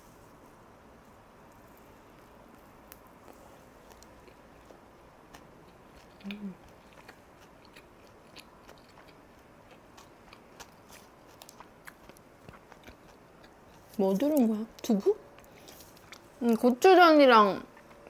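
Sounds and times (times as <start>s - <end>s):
person chewing food: 1.5s - 14.5s, 15.3s - 16.8s, 17.7s - 18.0s.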